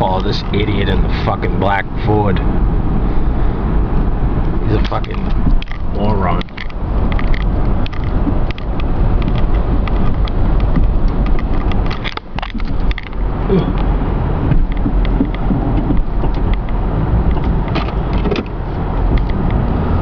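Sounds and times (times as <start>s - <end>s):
truck engine rumble: 0.0s - 20.0s
clicking and rattling: 4.8s - 13.9s, 14.5s - 19.7s.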